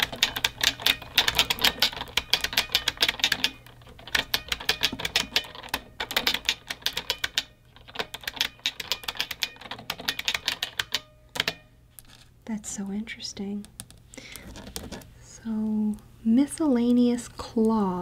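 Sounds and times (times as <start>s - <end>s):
typing on a mechanical keyboard: 0.0s - 11.6s.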